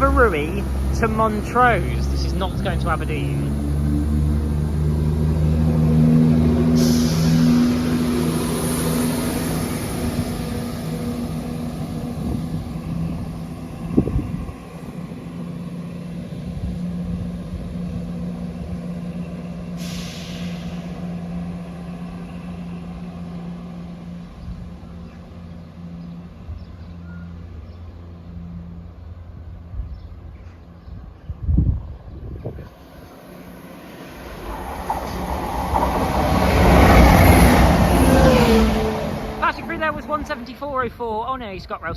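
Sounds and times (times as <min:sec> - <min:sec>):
train diesel engines humming: 0:00.0 - 0:31.2, 0:32.6 - 0:41.9
hiss of air: 0:06.7 - 0:10.2, 0:19.8 - 0:21.0.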